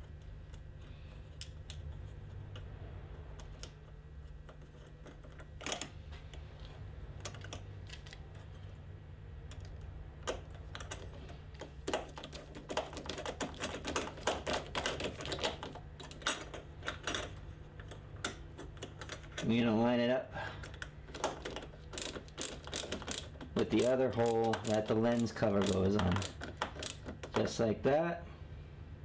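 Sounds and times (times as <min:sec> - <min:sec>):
steady low hum: 0:00.0 - 0:29.0
screwdriver and plastic parts clicking: 0:09.5 - 0:19.5, 0:20.6 - 0:27.6.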